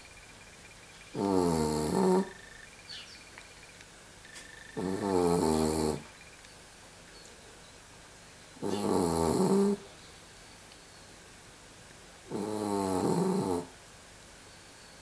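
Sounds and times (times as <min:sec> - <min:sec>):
person snoring: 0:01.2 - 0:02.3, 0:12.3 - 0:13.7.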